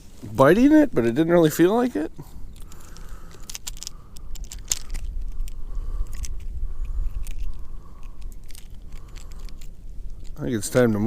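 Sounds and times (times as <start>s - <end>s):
wind buffeting microphone: 2.2s - 11.0s
sharp crackling clicks: 2.5s - 11.0s.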